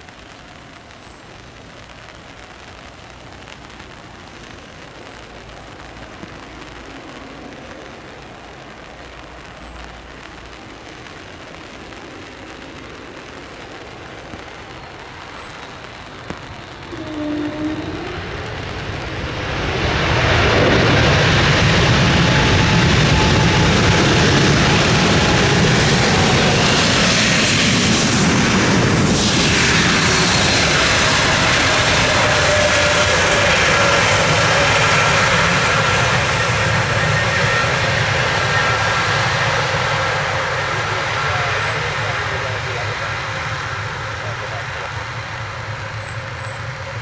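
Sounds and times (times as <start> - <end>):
jet airliner passing: 10.7 - 47.0
high whining fan tones: 15.6 - 47.0.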